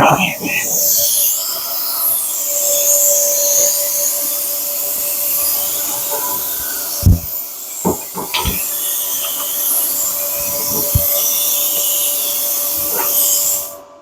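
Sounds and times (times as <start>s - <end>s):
power tool hissing on metal: 0.0s - 14.0s
short knocks: 7.0s - 7.3s.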